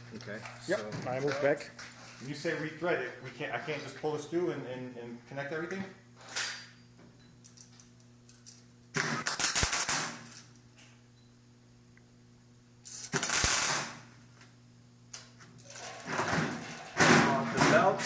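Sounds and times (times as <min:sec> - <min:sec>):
steady electrical hum: 0:00.0 - 0:18.0
arc welding crackle: 0:08.9 - 0:10.6, 0:12.8 - 0:14.4, 0:15.1 - 0:18.0.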